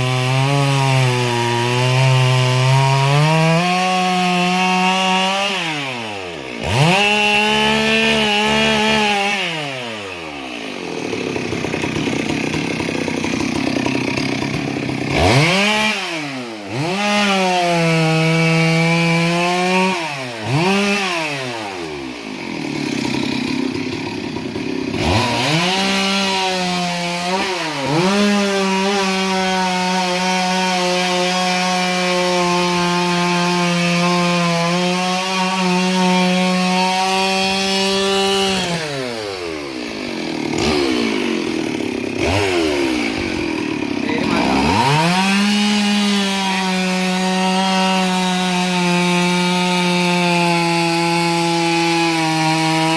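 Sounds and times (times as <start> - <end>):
chainsaw running at high revs: 0.0 - 52.9.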